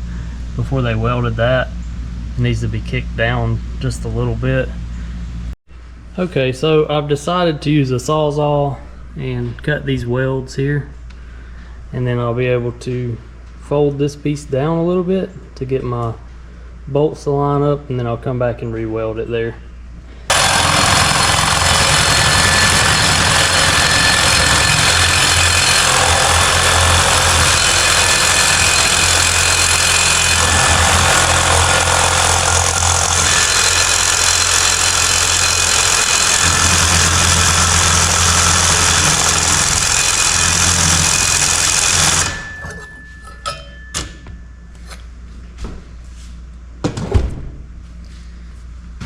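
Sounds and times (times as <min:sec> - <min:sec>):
reciprocating saw cutting steel: 0:20.3 - 0:44.2.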